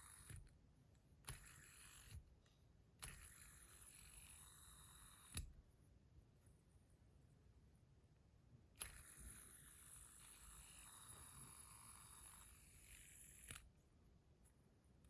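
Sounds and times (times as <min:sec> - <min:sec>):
fidget spinner bearing whirring: 0:00.0 - 0:00.5, 0:01.2 - 0:02.2, 0:03.0 - 0:05.5, 0:08.8 - 0:13.7
fidget spinner clicks: 0:01.2 - 0:02.2, 0:03.0 - 0:05.6, 0:08.8 - 0:13.7.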